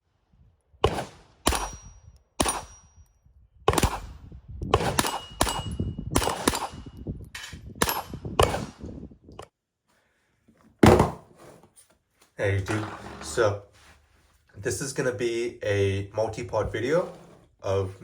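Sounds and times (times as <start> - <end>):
pistol shots: 0.8 - 2.8, 3.7 - 4.1, 4.7 - 6.9.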